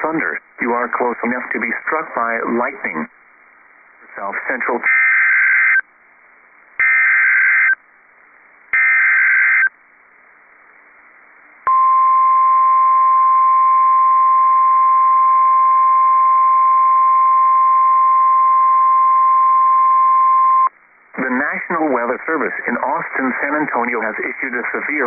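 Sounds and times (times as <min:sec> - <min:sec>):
data bursts: 0:06.8 - 0:07.8, 0:08.8 - 0:09.7
steady warning alarm tone: 0:06.8 - 0:07.8, 0:08.8 - 0:09.7.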